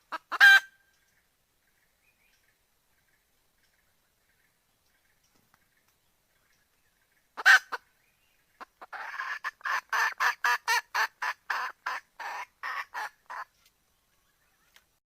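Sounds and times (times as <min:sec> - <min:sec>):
hen clucking: 0:00.0 - 0:00.8, 0:07.4 - 0:07.9, 0:08.5 - 0:13.5
hen squawk: 0:08.6 - 0:13.5.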